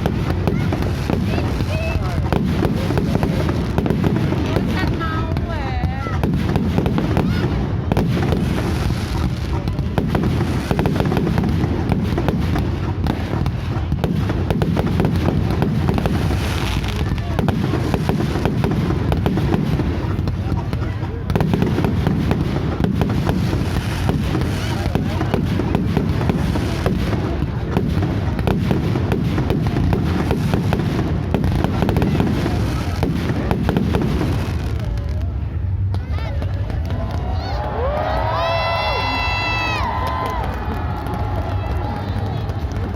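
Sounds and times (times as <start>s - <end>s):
fireworks bangs and pops: 0.0s - 42.9s
continuous low rumble: 27.2s - 42.9s.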